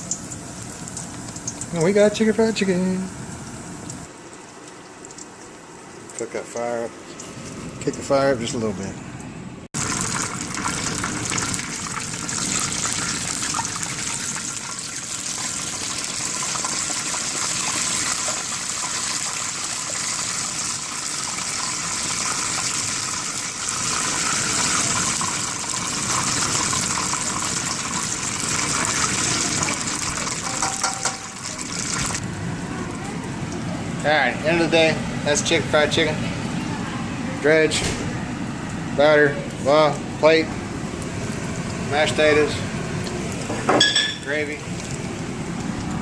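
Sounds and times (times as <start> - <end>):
chicken sizzling in hot oil: 0.0 - 6.2, 9.8 - 32.4, 40.6 - 46.0.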